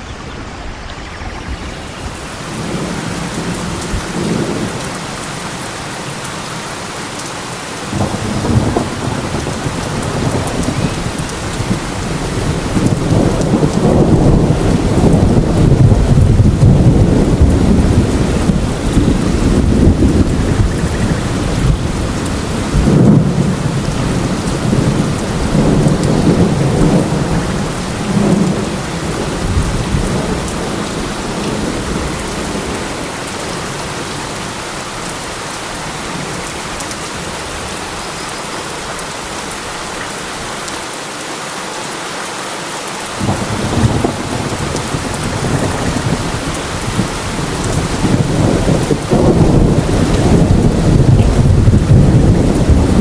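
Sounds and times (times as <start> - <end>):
steady rain: 0.0 - 53.0
rolling thunder: 7.9 - 34.1, 43.2 - 53.0.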